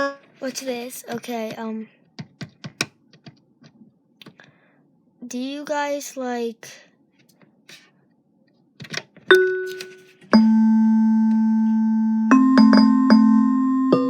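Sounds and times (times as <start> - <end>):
electronic keyboard notes: 0.0 - 0.3, 9.3 - 14.0.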